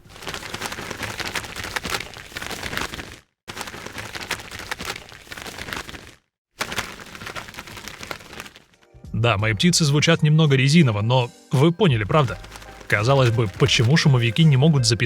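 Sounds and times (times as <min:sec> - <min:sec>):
gloves flapping like wings: 0:00.0 - 0:09.0, 0:12.0 - 0:15.0.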